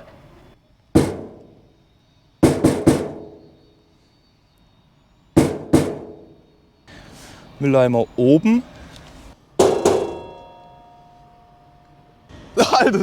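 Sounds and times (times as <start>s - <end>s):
metal bin struck by hand: 1.0s - 1.6s, 2.4s - 3.6s, 5.4s - 6.4s, 9.6s - 10.8s.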